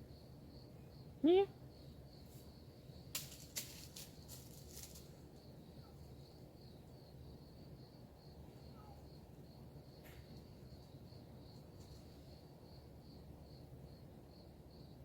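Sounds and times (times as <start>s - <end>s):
insect chirping: 0.0s - 15.0s.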